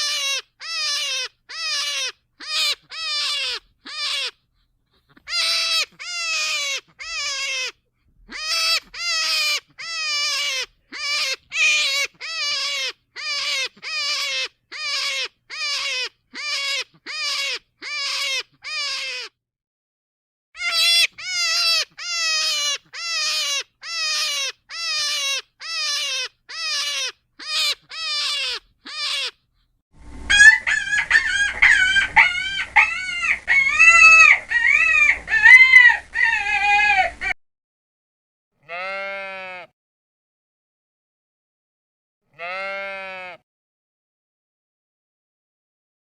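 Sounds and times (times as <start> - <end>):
bird calling: 5.2 - 19.3, 30.2 - 37.4
low hum: 30.0 - 31.6
flock of fowl calling: 30.3 - 37.4
sheep bleating: 38.6 - 39.7, 42.3 - 43.4.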